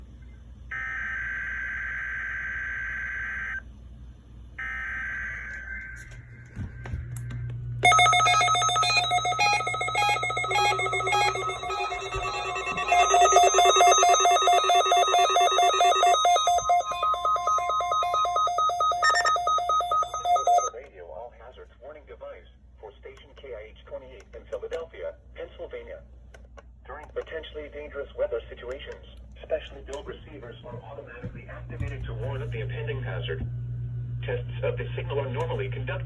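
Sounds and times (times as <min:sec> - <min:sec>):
buzzing digital data tones: 0:07.8 - 0:20.7
pulsing electronic alert tone: 0:07.8 - 0:20.7.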